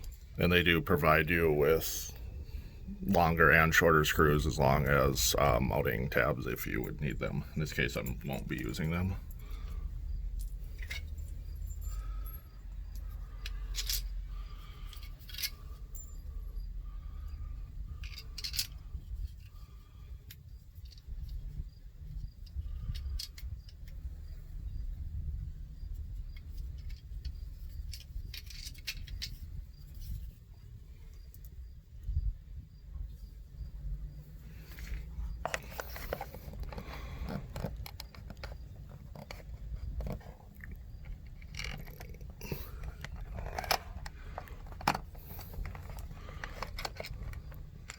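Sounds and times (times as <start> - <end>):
low steady hum: 0.0 - 47.9
metal hardware clicking and rattling: 4.7 - 19.6, 26.4 - 30.3, 34.6 - 47.9.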